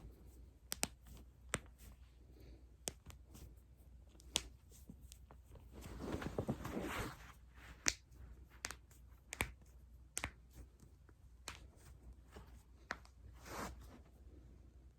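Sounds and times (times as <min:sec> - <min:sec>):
rustling body movement: 0:04.7 - 0:07.8, 0:11.7 - 0:14.2.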